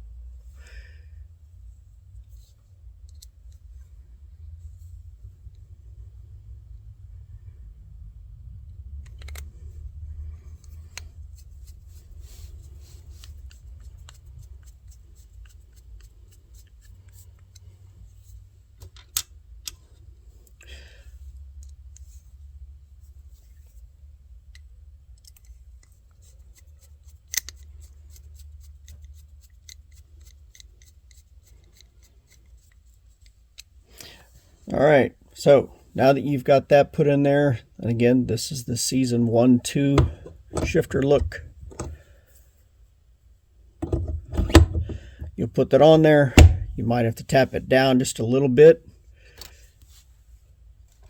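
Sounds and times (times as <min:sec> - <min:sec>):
low steady rumble: 0:00.0 - 0:51.0
small screws clicking: 0:24.5 - 0:33.8.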